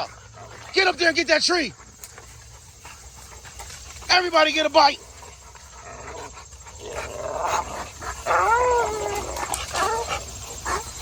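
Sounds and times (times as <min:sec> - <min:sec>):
dogs biting branches: 0:00.0 - 0:11.0
dogs whining: 0:05.3 - 0:11.0.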